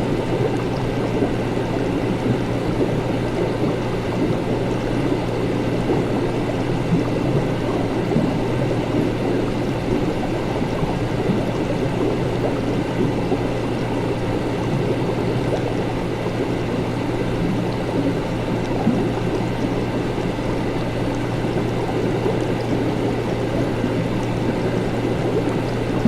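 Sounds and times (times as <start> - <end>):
liquid bubbling: 0.0 - 26.0.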